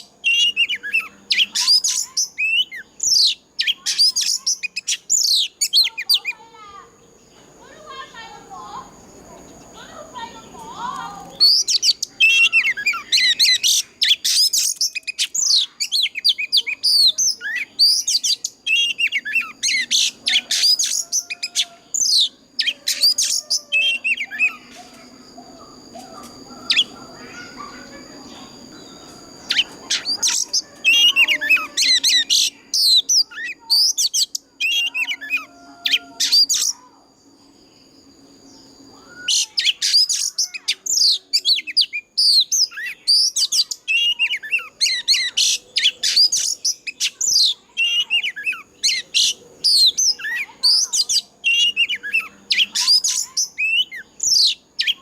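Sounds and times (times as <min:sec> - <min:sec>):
bird singing whistles: 0:11.3 - 0:25.0, 0:28.7 - 0:36.8, 0:38.9 - 0:55.0.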